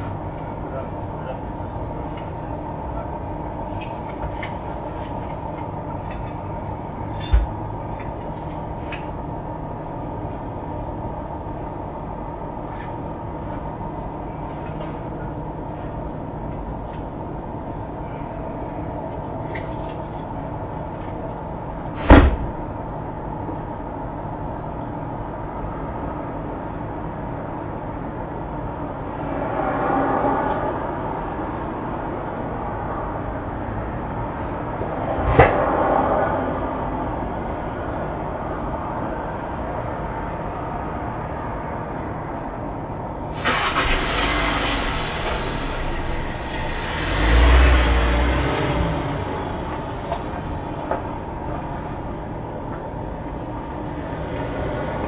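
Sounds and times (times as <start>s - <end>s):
steady background hum: 0.0s - 55.0s
loud sharp bang: 22.0s - 22.6s
vehicle engine starting and running: 43.1s - 55.0s.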